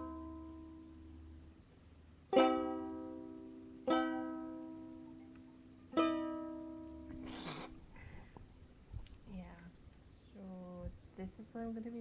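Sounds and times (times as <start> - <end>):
ukulele chords strummed: 0.0 - 1.5, 2.2 - 7.2.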